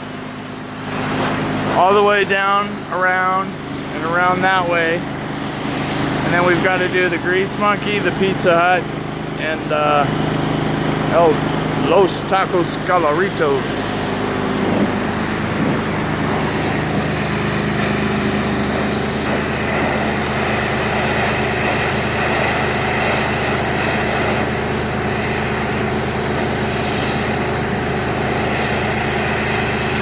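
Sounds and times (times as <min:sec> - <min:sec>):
pressure washer engine running: 0:00.0 - 0:30.0
water spray hissing: 0:13.3 - 0:30.0.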